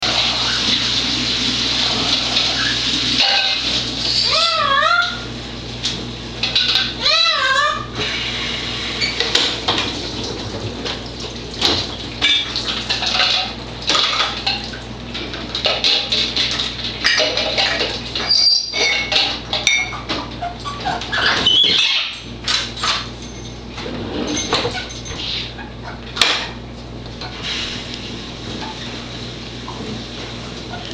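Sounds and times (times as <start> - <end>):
parrot high squeaks: 2.5 - 5.3, 6.6 - 7.9, 18.2 - 18.9, 20.4 - 22.2.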